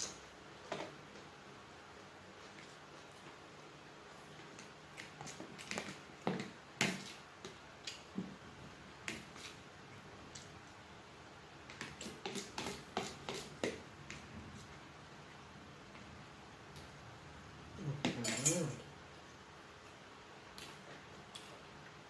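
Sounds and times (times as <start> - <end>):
chewing and handling food: 2.2 - 8.4, 19.3 - 22.0.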